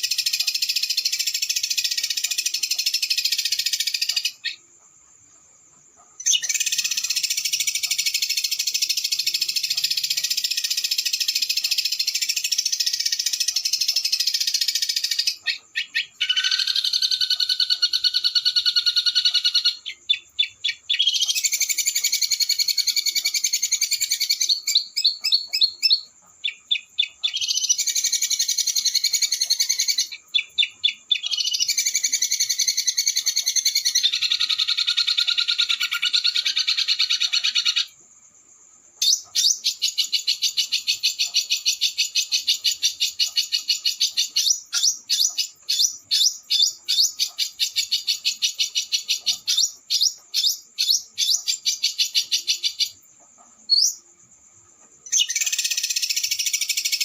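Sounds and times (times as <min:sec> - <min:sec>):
songbird trilling: 0:06.2 - 0:37.9, 0:39.0 - 0:53.0, 0:55.0 - 0:57.0.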